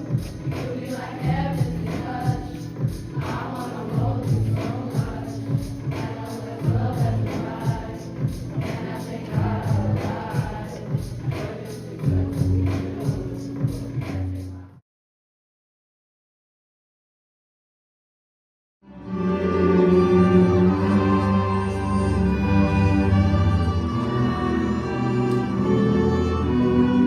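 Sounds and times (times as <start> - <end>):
pop song with singing: 0.0 - 14.7.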